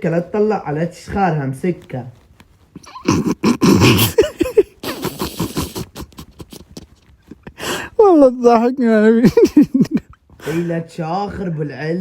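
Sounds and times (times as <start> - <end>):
man snoring: 2.9 - 6.0.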